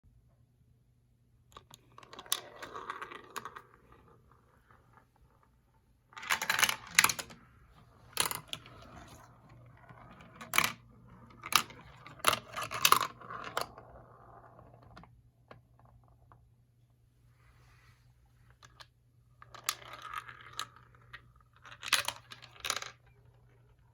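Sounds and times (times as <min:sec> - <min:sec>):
marbles clattering down plastic track: 0:01.7 - 0:05.3, 0:06.2 - 0:07.4, 0:08.0 - 0:15.0, 0:19.4 - 0:23.8.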